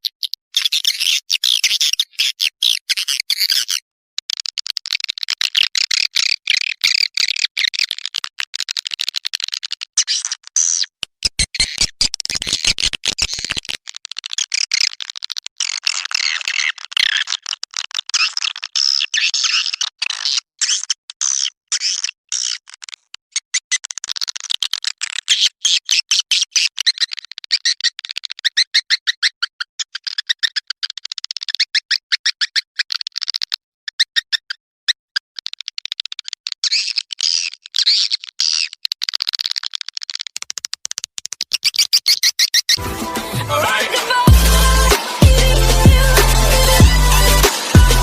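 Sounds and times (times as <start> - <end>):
swiftlet chirps and twitters: 0.0 - 3.8, 41.0 - 42.8.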